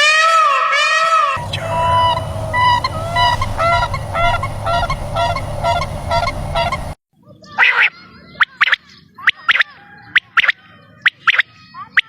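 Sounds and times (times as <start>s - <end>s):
bird calling: 1.4s - 7.0s
harsh bird call: 1.4s - 7.0s
steady low hum: 1.4s - 7.0s.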